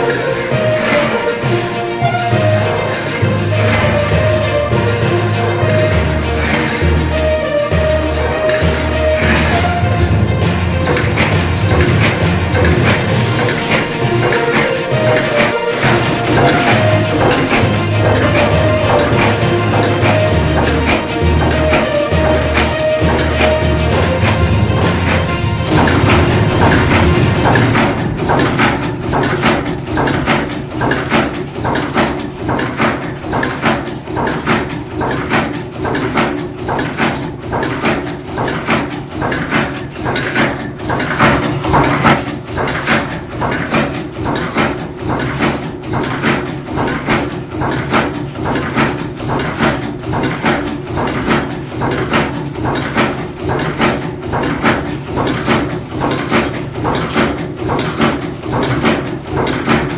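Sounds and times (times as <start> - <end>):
forging machine ram striking: 0.0 - 59.9
low mechanical hum: 0.0 - 59.9.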